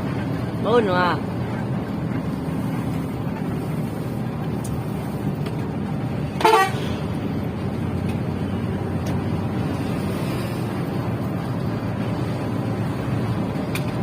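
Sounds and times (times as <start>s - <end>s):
bus engine rumbling: 0.0s - 14.0s
horn toot: 6.4s - 7.0s.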